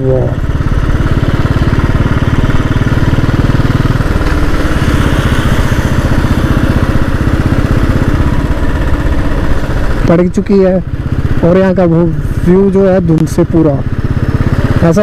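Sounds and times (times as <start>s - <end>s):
single-cylinder motorcycle engine thumping: 0.4s - 10.2s.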